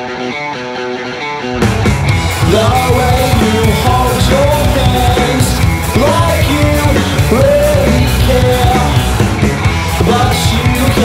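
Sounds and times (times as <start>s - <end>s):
bass guitar: 0.0s - 11.0s
drums: 0.0s - 11.0s
electric guitar: 0.0s - 11.0s
person singing: 2.3s - 11.0s.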